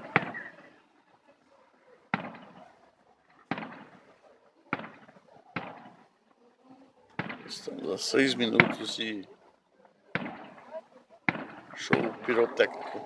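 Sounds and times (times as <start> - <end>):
fireworks explosions: 0.0 - 0.7, 2.0 - 6.2, 7.1 - 7.7, 8.4 - 9.0, 10.1 - 13.0.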